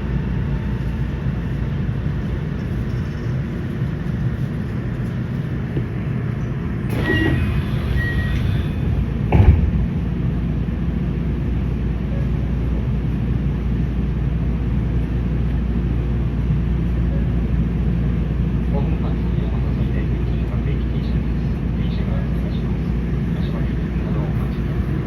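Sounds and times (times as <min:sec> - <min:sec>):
electric train rumbling: 0:00.0 - 0:25.0
high squeal: 0:06.9 - 0:08.9
loud thump: 0:08.9 - 0:10.1.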